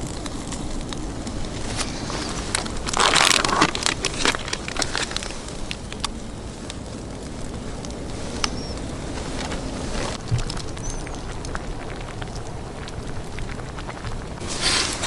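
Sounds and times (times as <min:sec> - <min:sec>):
crunching burst: 0:00.0 - 0:06.1
sharp clicks and crackles: 0:00.0 - 0:15.0
steady low rumble: 0:00.0 - 0:15.0.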